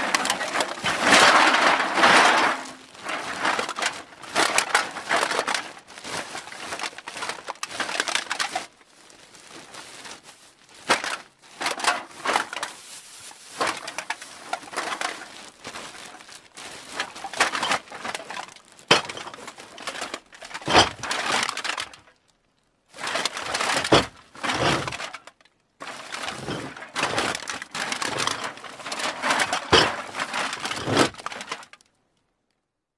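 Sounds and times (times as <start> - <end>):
cans clattering and clinking: 0.0 - 5.7, 17.3 - 21.5, 23.2 - 25.1, 26.1 - 31.7
bag crinkling: 0.0 - 32.0.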